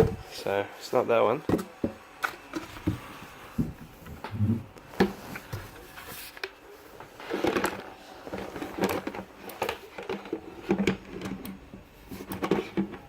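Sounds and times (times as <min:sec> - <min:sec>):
plastic rustling: 0:02.3 - 0:13.0.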